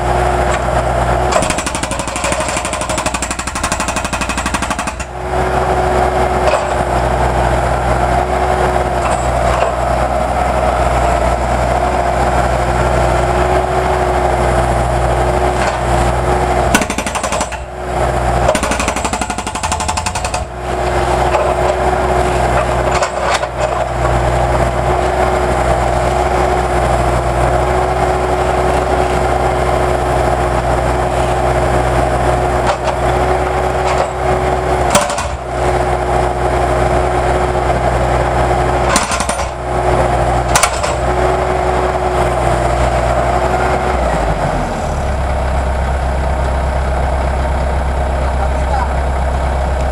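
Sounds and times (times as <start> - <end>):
jackhammer hammering concrete: 1.3 - 5.2, 16.6 - 17.8, 18.4 - 20.7, 34.8 - 35.5, 38.9 - 39.7, 40.5 - 41.2.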